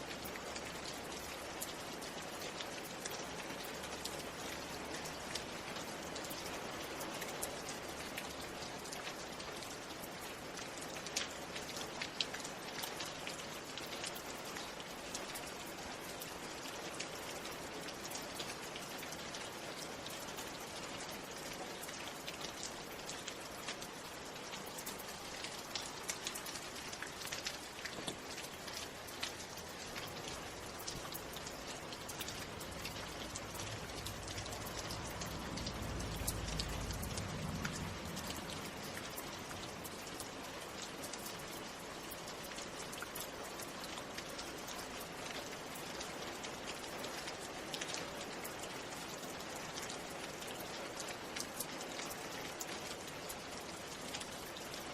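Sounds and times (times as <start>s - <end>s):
rain drops ticking on a surface: 0.0s - 54.9s.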